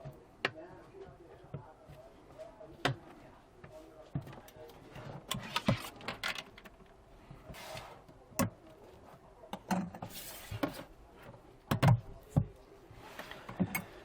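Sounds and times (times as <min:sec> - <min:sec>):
tools clicking and knocking: 0:13.5 - 0:14.0.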